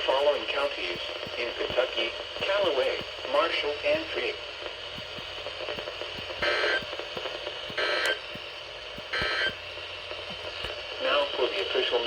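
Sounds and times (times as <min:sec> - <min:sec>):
radio hiss: 0:00.0 - 0:12.0
buzzy data bursts: 0:05.0 - 0:09.7.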